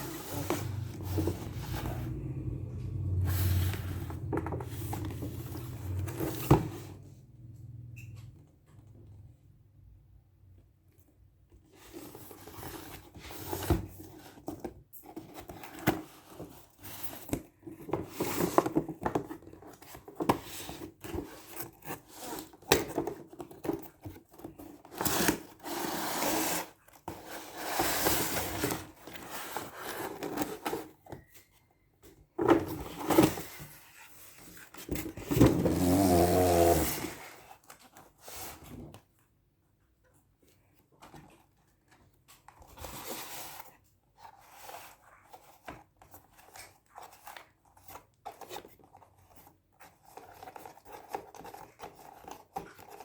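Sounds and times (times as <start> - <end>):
packaging rubbing and scraping: 32.8 - 38.7.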